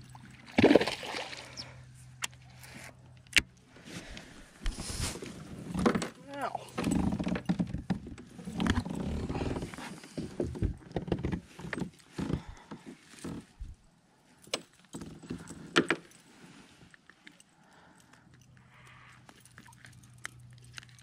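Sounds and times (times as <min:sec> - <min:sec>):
knocks and rattles on kayak: 0:05.6 - 0:13.5.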